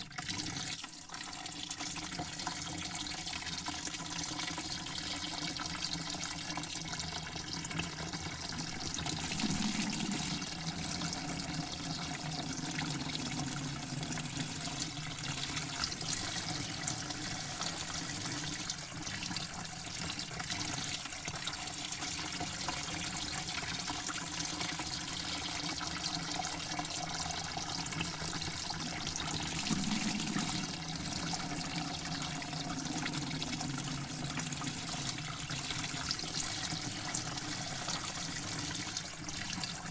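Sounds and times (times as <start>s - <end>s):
water running: 7.3s - 20.4s, 22.5s - 39.9s.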